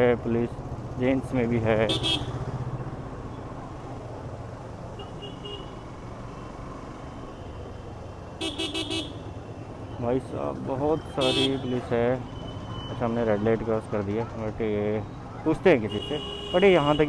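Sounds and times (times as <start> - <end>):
vehicle horn tooting: 1.9 - 2.3, 8.4 - 9.2, 11.1 - 11.8, 15.8 - 17.0.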